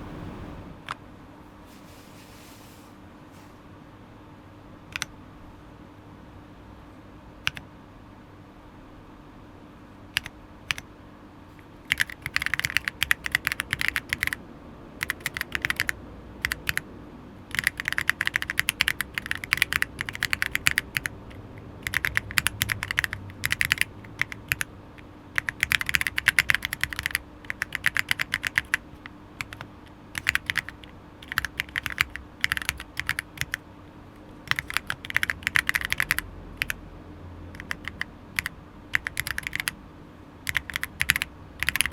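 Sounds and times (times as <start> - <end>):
typing on mechanical keyboard: 4.9 - 5.1, 7.4 - 7.6, 10.2 - 10.8, 11.6 - 14.4, 15.0 - 16.8, 17.5 - 24.7, 25.3 - 33.6, 34.4 - 36.8, 37.6 - 39.8, 40.4 - 41.9.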